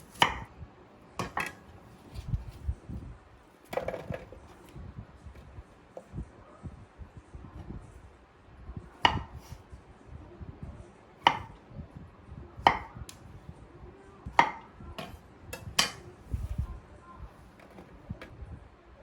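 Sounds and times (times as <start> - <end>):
soft handling noise: 1.2 - 6.7, 14.3 - 18.5
knife chopping on cutting board: 9.0 - 9.5, 11.2 - 11.5, 12.6 - 12.9.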